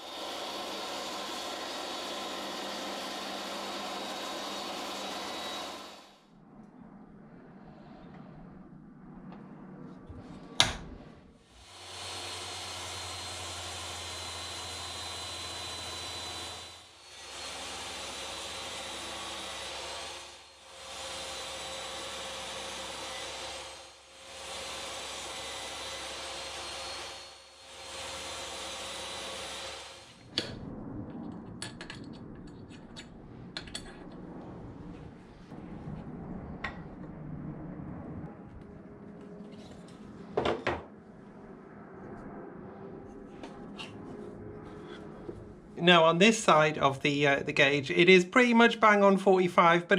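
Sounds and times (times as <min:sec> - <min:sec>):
electric power tool whining: 0:00.0 - 0:06.2, 0:11.5 - 0:30.3.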